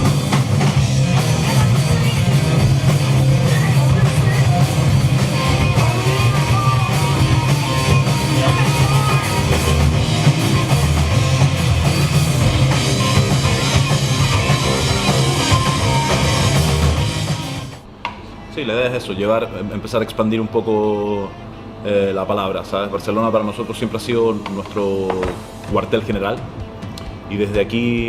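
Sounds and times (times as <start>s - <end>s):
rock band playing: 0.0s - 17.8s.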